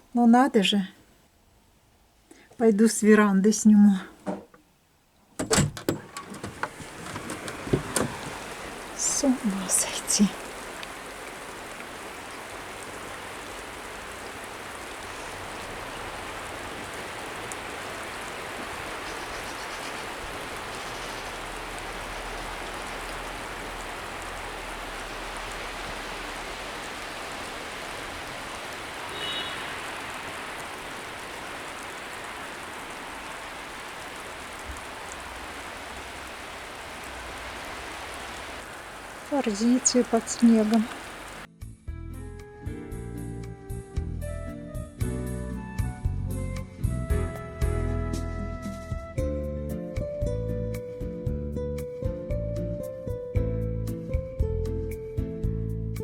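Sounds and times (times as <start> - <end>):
hiss of sleet falling: 6.7 - 41.5.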